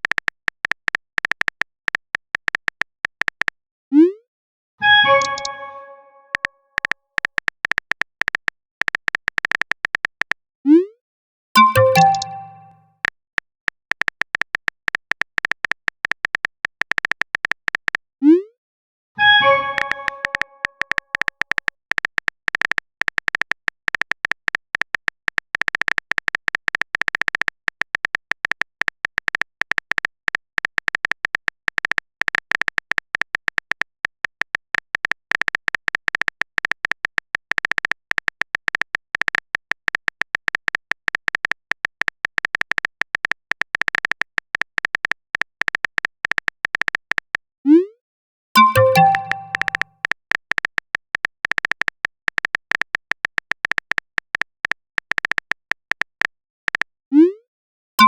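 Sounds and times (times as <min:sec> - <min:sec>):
phone keyboard typing clicks: 0:05.1 - 0:10.4, 0:11.6 - 0:12.8, 0:19.6 - 0:47.4, 0:48.6 - 0:56.9.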